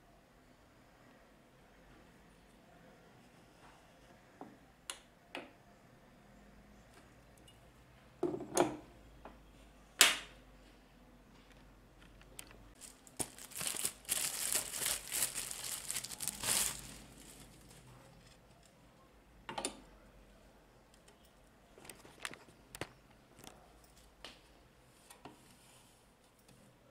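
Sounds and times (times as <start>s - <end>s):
plastic wrap crinkling: 12.8s - 18.4s.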